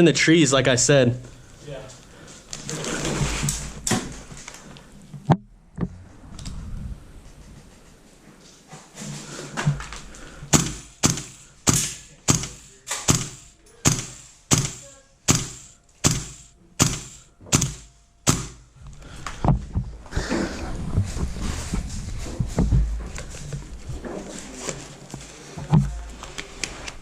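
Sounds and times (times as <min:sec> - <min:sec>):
airsoft rifle shots: 0:10.5 - 0:18.7.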